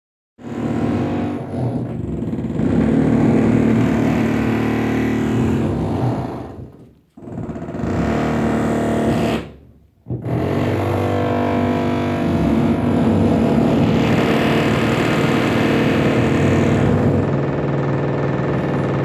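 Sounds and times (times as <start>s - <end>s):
power tool motor running: 10.3s - 19.0s.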